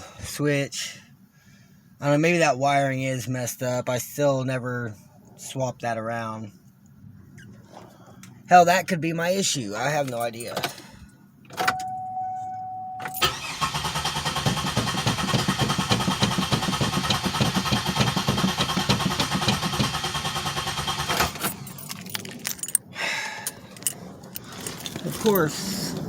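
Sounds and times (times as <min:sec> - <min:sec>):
electronic dash chime: 0:11.6 - 0:13.2
starter cranking engine: 0:13.2 - 0:21.7.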